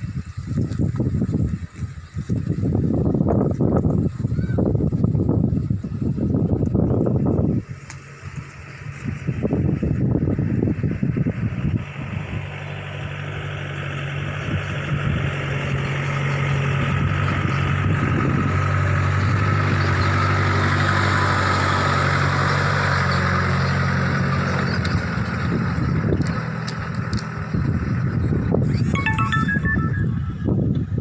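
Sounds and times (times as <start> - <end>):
vehicle engine passing by: 7.0 - 28.9.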